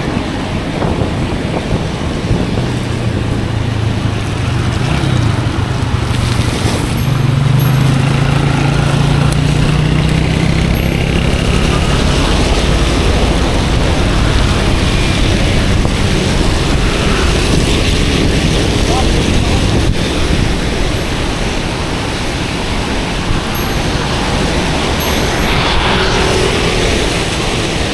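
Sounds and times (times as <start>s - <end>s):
passing vehicle engine hum: 0.0s - 27.9s
tyres on wet road: 0.0s - 27.9s
wind rushing: 0.0s - 27.9s.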